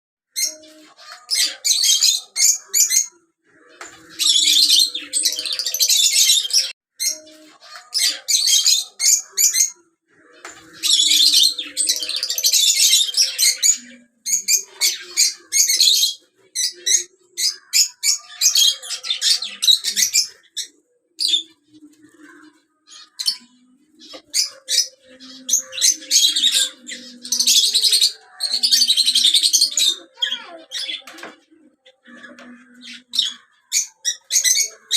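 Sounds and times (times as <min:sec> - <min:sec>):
lovebirds chirping and squawking: 0:00.3 - 0:34.9.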